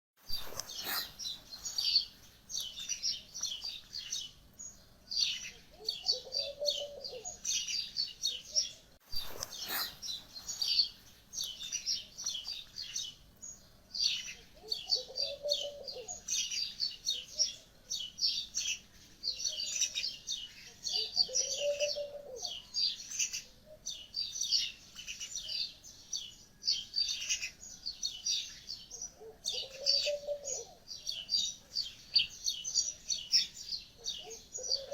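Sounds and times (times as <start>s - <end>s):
birds chirping in trills: 0.2s - 34.9s
low round bird call: 0.3s - 4.2s, 5.2s - 13.0s, 20.6s - 23.8s, 28.9s - 31.3s.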